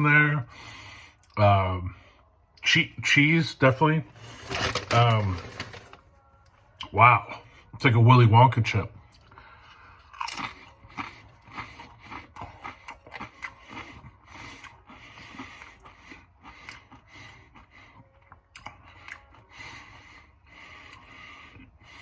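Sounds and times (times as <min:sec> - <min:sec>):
person chewing crunchy chips: 0:04.1 - 0:06.0, 0:09.1 - 0:22.0.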